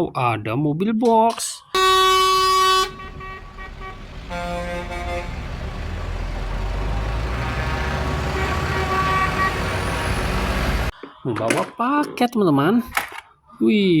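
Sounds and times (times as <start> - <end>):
truck horn honking: 1.8 - 10.9
truck engine running: 2.0 - 10.9.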